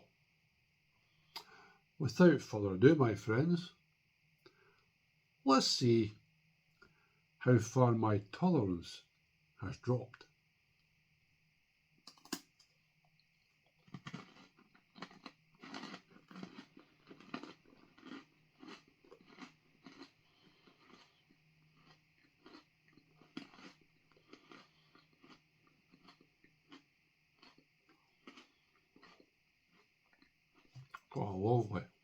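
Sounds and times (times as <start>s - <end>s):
crunchy chewing: 12.1s - 31.4s.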